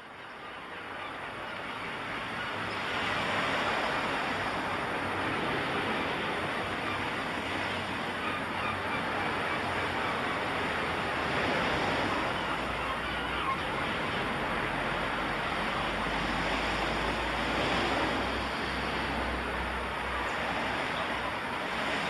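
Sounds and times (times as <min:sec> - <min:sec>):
steady rushing noise: 0:09.3 - 0:22.0.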